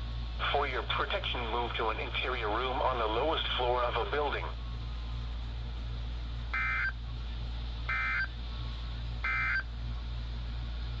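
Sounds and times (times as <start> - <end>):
low receiver hum: 0.0 - 11.0
harsh two-tone digital data buzz: 6.6 - 7.0, 7.9 - 8.3, 9.2 - 9.7.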